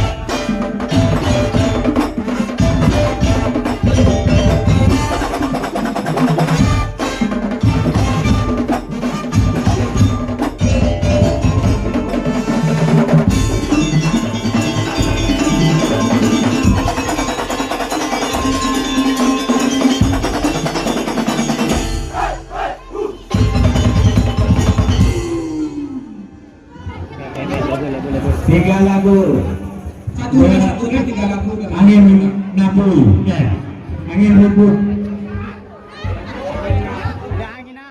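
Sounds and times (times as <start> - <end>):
percussion ensemble on slit drums: 0.0 - 26.0, 28.2 - 32.2.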